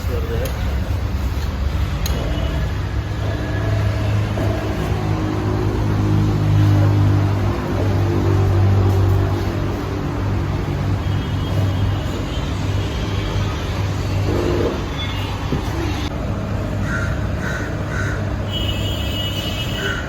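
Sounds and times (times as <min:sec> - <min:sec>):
street traffic hum: 0:00.0 - 0:20.0
crow cawing: 0:16.8 - 0:18.3.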